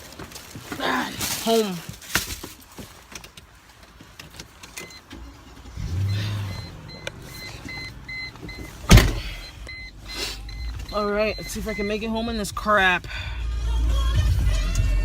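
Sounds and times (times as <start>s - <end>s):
car engine starting: 4.5s - 15.0s
car warning chime beeping: 4.8s - 13.1s
car door slamming: 8.4s - 9.4s.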